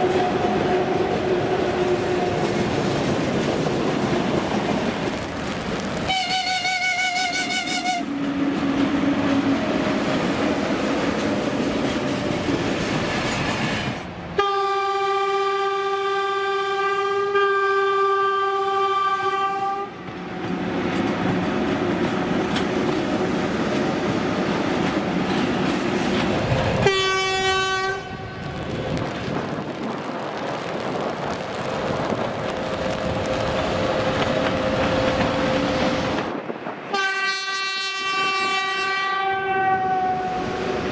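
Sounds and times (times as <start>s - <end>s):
train wheels clattering on rails: 0.0s - 14.1s, 19.9s - 27.1s, 28.4s - 36.6s
train horn blast: 6.1s - 8.2s, 14.4s - 20.0s, 26.8s - 28.7s, 36.9s - 40.9s.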